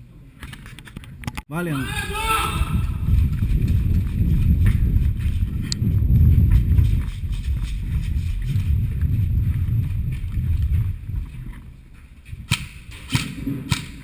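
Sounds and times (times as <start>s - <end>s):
low rumble of microphone handling: 2.6s - 12.6s.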